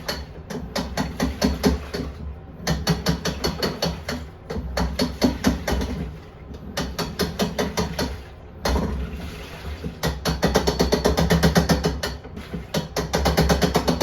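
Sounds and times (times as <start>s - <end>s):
washing machine clattering knock: 0.0s - 9.1s, 9.8s - 14.0s.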